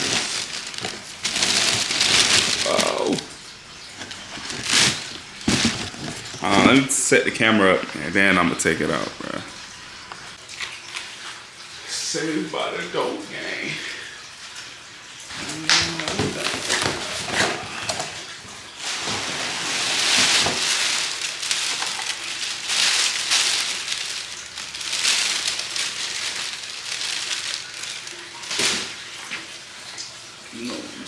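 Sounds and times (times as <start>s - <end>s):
packaging rustling and crinkling: 0.0s - 10.3s, 15.3s - 29.5s.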